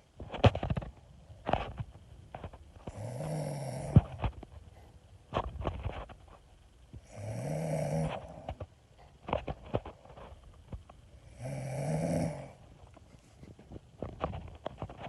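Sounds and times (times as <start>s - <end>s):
person snoring: 2.9s - 4.2s, 7.0s - 8.6s, 11.2s - 12.6s.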